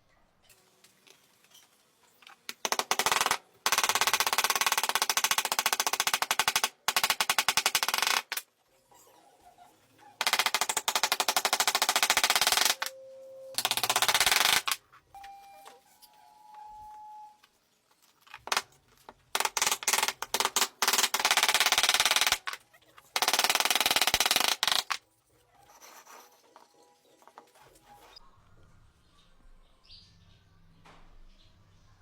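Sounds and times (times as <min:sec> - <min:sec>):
short steady beeps: 0:15.2 - 0:17.4
rapid clicks: 0:19.4 - 0:22.6, 0:23.2 - 0:25.0.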